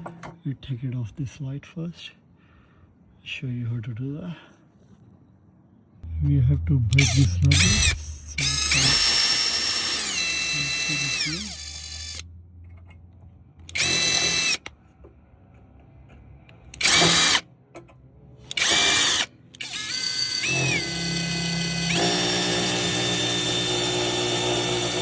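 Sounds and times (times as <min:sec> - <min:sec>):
electric drill whining: 0:07.0 - 0:12.2, 0:13.7 - 0:14.7, 0:16.8 - 0:17.4, 0:18.5 - 0:25.0.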